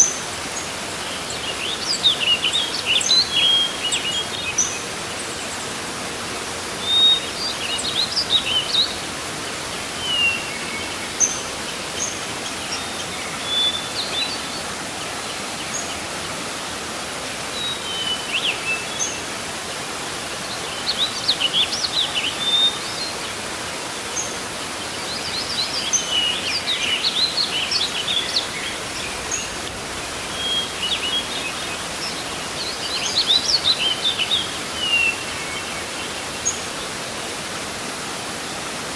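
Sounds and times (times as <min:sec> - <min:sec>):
waterfall rushing: 0:00.0 - 0:38.9
birds chirping: 0:24.1 - 0:37.0.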